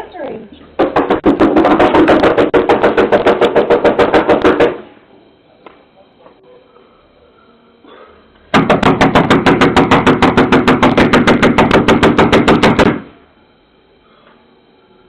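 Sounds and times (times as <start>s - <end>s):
rapid pounding on a door: 0.8s - 4.8s, 8.5s - 13.1s.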